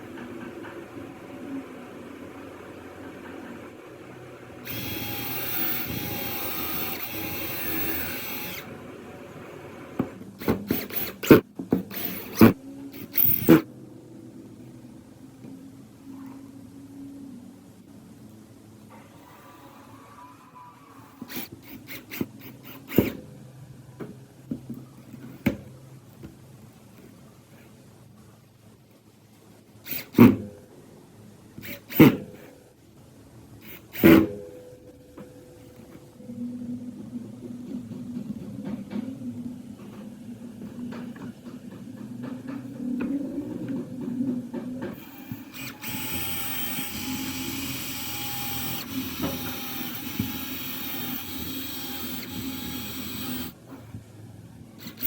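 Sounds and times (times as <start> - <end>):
electric hand drill running: 4.6 - 8.8, 10.7 - 13.6, 45.0 - 53.6
low steady hum: 34.4 - 54.9.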